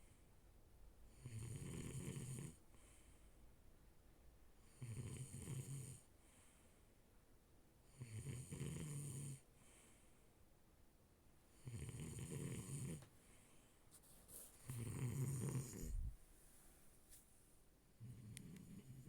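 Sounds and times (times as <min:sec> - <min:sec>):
person snoring: 0:14.7 - 0:16.1.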